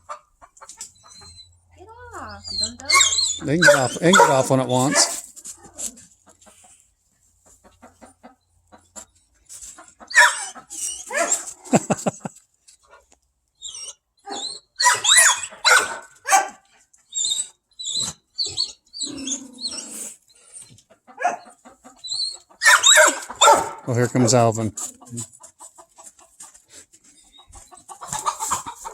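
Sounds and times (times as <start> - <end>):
dog whining: 0.8 - 6.0, 10.1 - 11.6, 13.6 - 16.4, 17.0 - 24.2
dog barking short barks: 3.6 - 5.2, 22.6 - 23.9.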